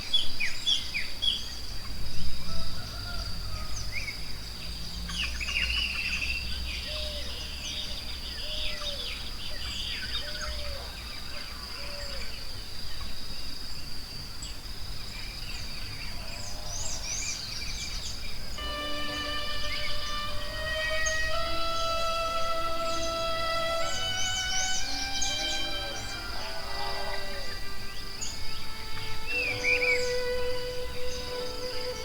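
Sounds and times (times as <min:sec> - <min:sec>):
shrill insect drone: 0:18.5 - 0:32.0
birds chirping and calling: 0:19.1 - 0:32.0.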